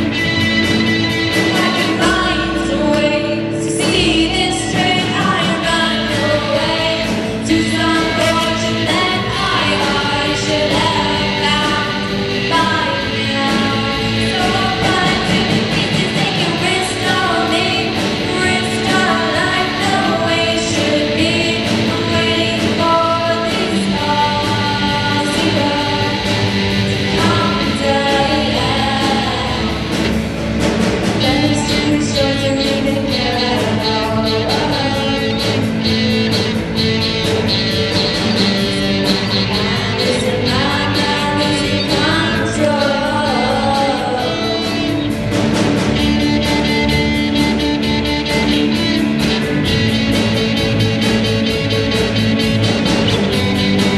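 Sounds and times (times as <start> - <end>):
person singing: 0.0 - 30.2, 31.2 - 36.2, 38.1 - 45.2
drumming: 0.0 - 53.9
rock band playing: 0.0 - 53.9.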